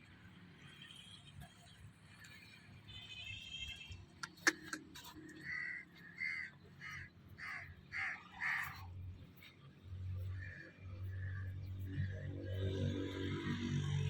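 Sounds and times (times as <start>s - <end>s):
harsh rasping animal calls: 4.2s - 9.0s.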